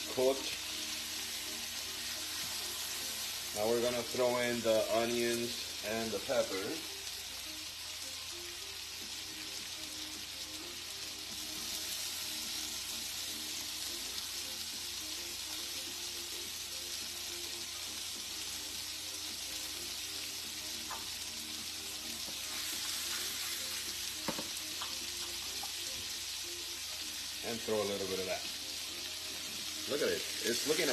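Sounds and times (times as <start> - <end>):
chicken sizzling in a pan: 0.0 - 30.9
utensil knocking against pan: 24.2 - 24.5.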